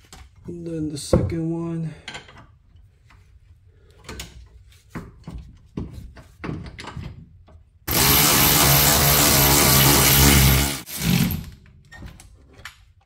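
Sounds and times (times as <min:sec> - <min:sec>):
power tool running: 0:07.9 - 0:11.4.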